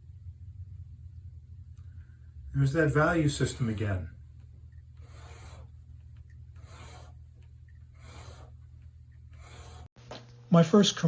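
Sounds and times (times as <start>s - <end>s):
low steady hum: 0.0s - 10.5s
rasping strokes: 2.6s - 10.0s.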